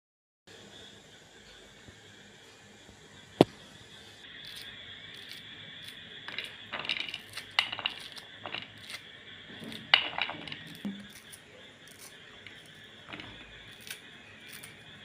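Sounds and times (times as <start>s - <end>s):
metal utensils clinking: 6.3s - 9.0s, 9.6s - 14.8s.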